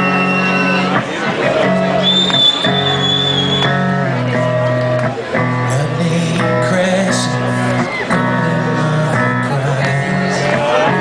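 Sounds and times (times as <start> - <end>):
slow rock guitar playing: 0.0 - 11.0.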